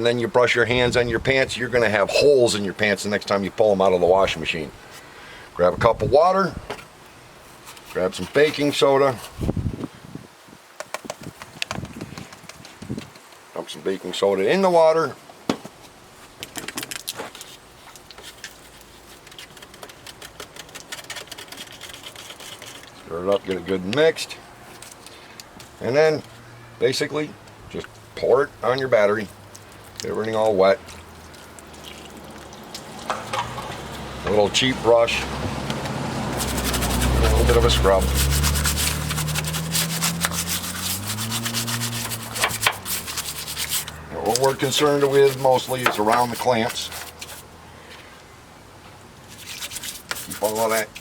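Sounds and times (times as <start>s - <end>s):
brush scrubbing: 7.5s - 9.5s, 17.3s - 23.7s, 36.0s - 47.5s, 49.3s - 51.0s
powder pattering into water: 28.6s - 34.6s.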